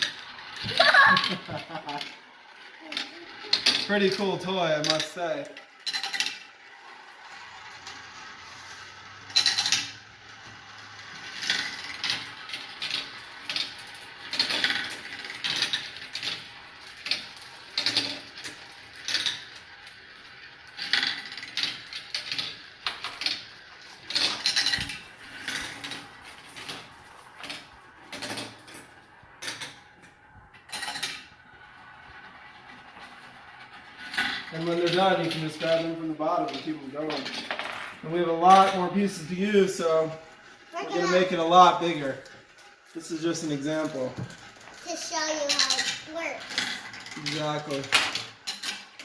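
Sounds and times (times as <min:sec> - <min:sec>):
marbles clattering down a marble run: 0:00.0 - 0:28.8, 0:30.7 - 0:31.4, 0:32.2 - 0:42.4, 0:43.1 - 0:49.0.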